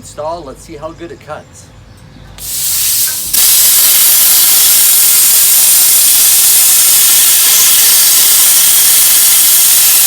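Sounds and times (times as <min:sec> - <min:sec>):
plasma cutter hissing: 0:02.4 - 0:10.0.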